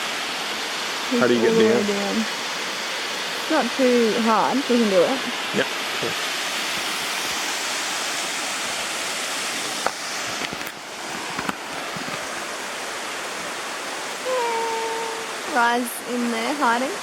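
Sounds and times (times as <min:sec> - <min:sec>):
waterfall rushing: 0:00.0 - 0:17.0.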